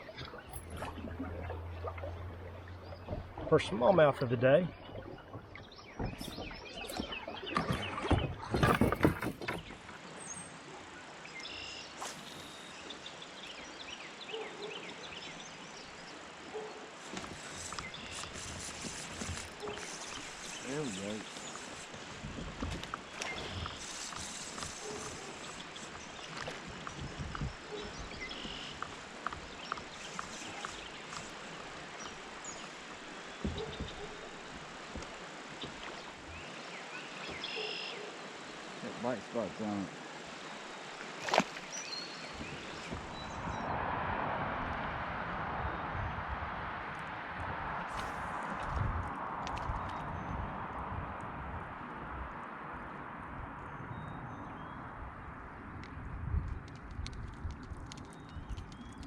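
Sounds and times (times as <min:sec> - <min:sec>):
faint bird chirps: 0:36.3 - 0:38.2.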